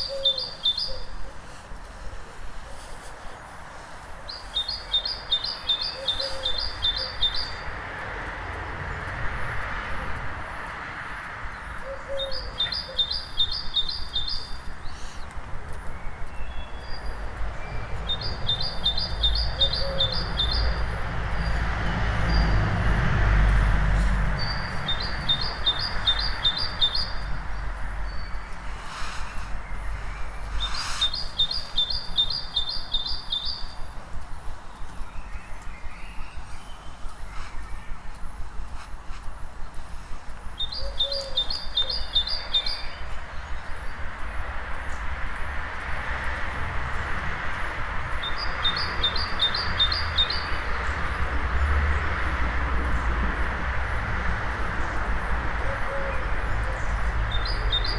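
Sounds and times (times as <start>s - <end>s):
low town rumble: 0.0s - 57.9s
faint bird chirping: 4.2s - 7.6s.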